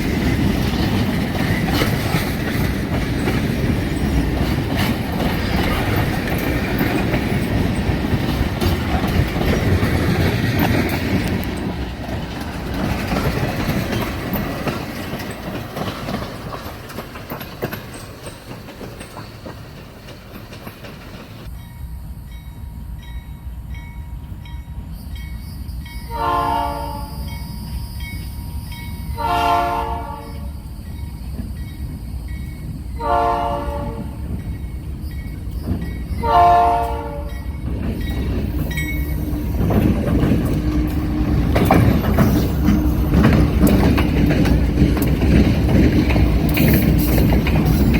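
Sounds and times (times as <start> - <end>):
train wheels rumbling and clacking: 0.0 - 47.9
locomotive air horn blasts: 26.1 - 27.3, 29.2 - 30.6, 33.0 - 34.3, 36.2 - 37.4.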